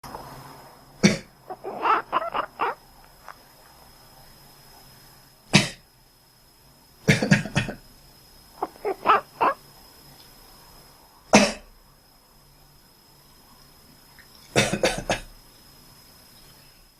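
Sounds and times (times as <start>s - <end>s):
person coughing: 1.0s - 1.3s, 5.6s - 5.8s, 11.4s - 11.7s, 14.6s - 15.3s
cat meowing: 1.5s - 2.8s, 8.6s - 9.6s.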